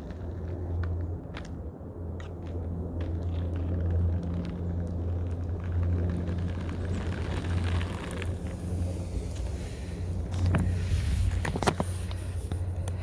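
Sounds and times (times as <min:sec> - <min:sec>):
roller skate wheels rolling on pavement: 0:00.0 - 0:13.0.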